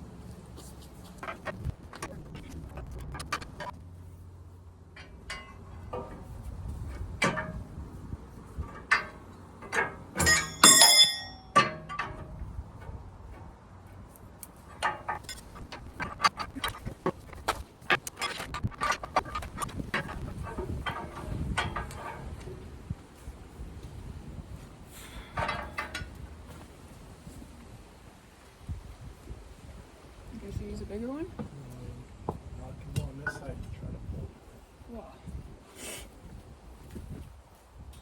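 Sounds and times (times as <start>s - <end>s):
metal clinks and knocks: 4.8s - 7.8s, 8.5s - 22.7s, 25.2s - 26.6s
loud ringing metal clangs: 8.9s - 12.4s.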